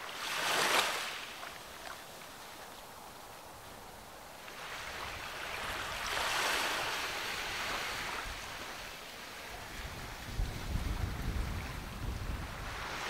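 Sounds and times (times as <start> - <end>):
ocean wave surging on beach: 4.6 - 13.0.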